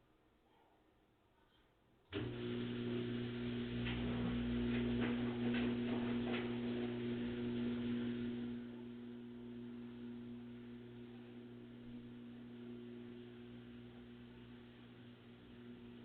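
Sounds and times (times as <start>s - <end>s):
washing machine motor hum: 2.1s - 16.0s.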